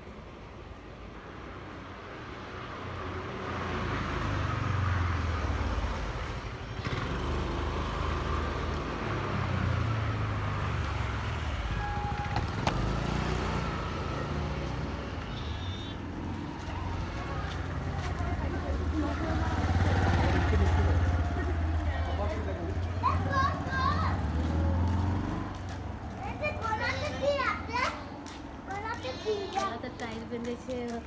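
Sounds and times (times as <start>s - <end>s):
low steady vehicle noise: 0.0s - 31.0s.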